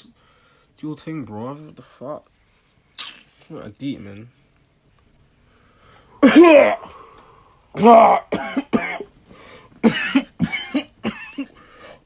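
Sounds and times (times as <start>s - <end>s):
man coughing: 6.2s - 6.9s, 7.8s - 9.1s, 9.8s - 11.6s.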